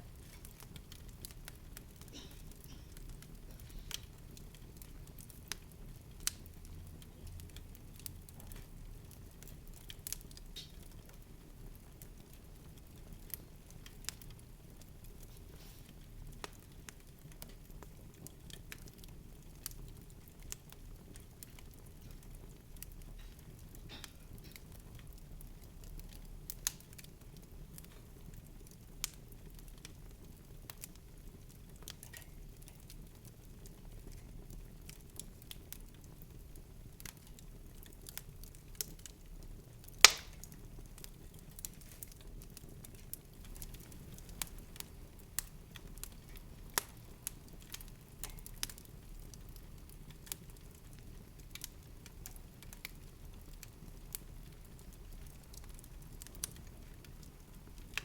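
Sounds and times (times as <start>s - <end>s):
sharp clicks and crackles: 39.8s - 40.6s.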